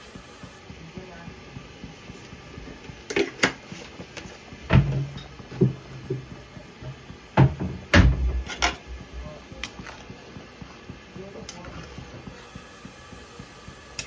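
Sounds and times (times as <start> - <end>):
kitchen knocks and thuds: 4.6 - 9.2.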